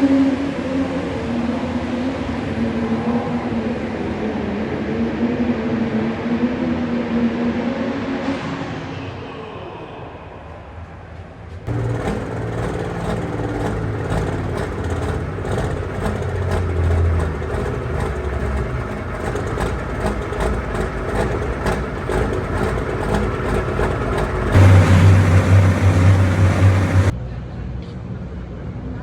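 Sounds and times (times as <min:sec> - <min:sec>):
loud engine under load: 0:11.7 - 0:27.2.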